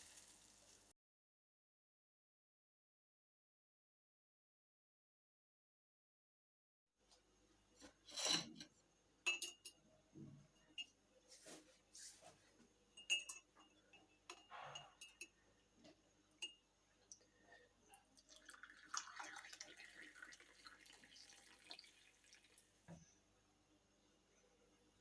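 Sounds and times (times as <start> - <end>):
glassware and utensils clinking: 8.1 - 9.8, 10.5 - 11.0, 12.9 - 15.4, 16.4 - 16.6
liquid being poured: 18.0 - 22.9.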